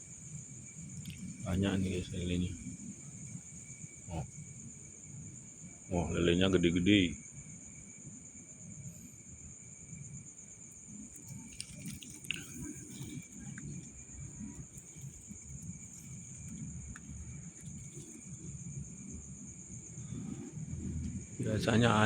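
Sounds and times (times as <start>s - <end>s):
crickets trilling: 0.0s - 22.0s
low rumble of movement: 0.3s - 4.9s, 11.0s - 22.0s.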